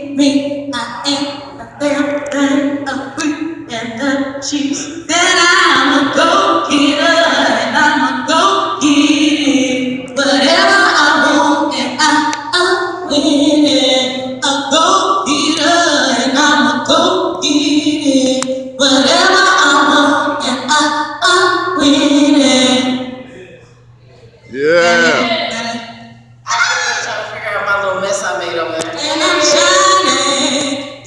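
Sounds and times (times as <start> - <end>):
woman singing vocal warm-up: 0.0 - 23.3, 28.8 - 31.0.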